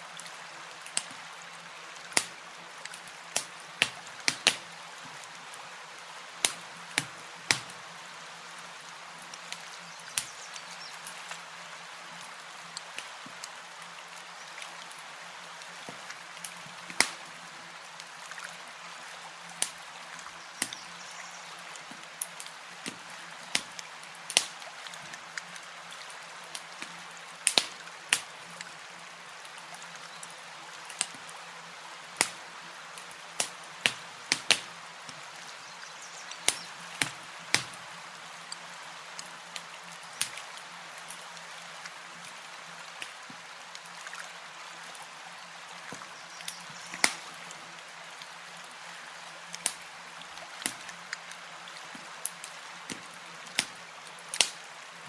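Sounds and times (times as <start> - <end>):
fire hissing softly: 0.0 - 55.0
campfire crackling and popping: 0.8 - 1.3, 2.0 - 5.3, 6.3 - 7.8, 9.2 - 11.4, 12.2 - 13.6, 15.6 - 18.2, 19.5 - 20.9, 21.5 - 25.7, 26.5 - 28.8, 29.4 - 31.3, 32.1 - 35.3, 36.2 - 41.2, 45.9 - 47.6, 49.5 - 49.9, 50.6 - 54.7.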